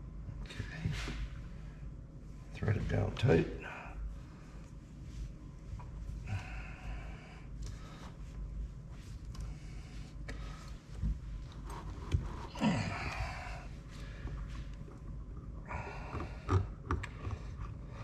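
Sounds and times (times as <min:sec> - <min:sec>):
man breathing heavily: 0:03.6 - 0:04.8, 0:06.1 - 0:11.4, 0:12.2 - 0:14.8, 0:15.6 - 0:18.0
man grunting: 0:12.5 - 0:13.6.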